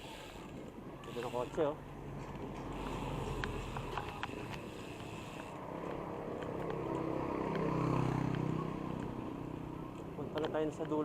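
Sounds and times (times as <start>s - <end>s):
road noise: 0.0s - 11.0s
wind: 0.0s - 11.0s
vehicle engine passing by: 2.5s - 9.9s.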